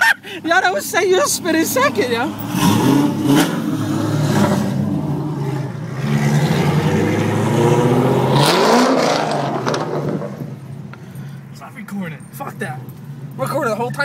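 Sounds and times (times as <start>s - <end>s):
loud car engine revving: 1.4s - 10.7s.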